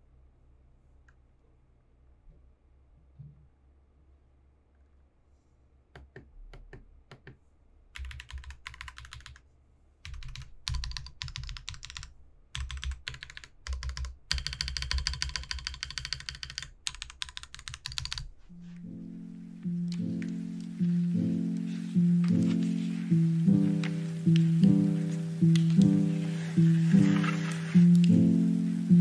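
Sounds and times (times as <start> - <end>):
mechanical keyboard typing: 8.0 - 9.4, 10.0 - 18.3, 25.5 - 26.1.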